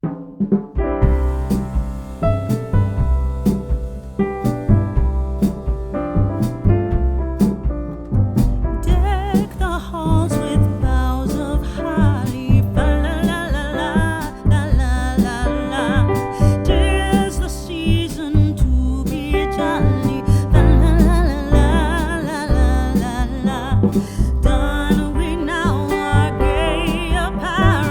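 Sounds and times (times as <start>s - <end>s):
piano and bass with beat: 0.0s - 27.9s
person singing with vibrato: 8.9s - 27.9s.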